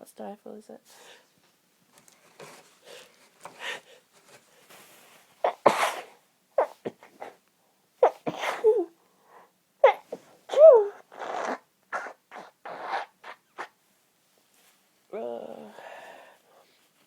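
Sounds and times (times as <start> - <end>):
woman sneezing: 5.4 - 7.4, 8.0 - 8.9, 9.8 - 13.7
woman breathing faintly: 15.3 - 17.0.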